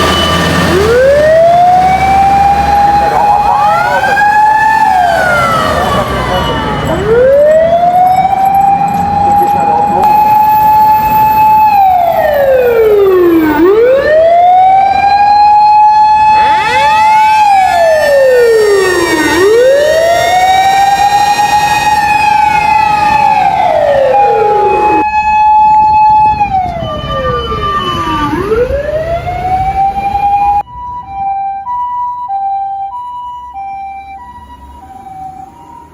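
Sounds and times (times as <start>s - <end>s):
fire engine siren wailing: 0.0s - 35.9s
two-tone ambulance siren: 0.0s - 35.9s.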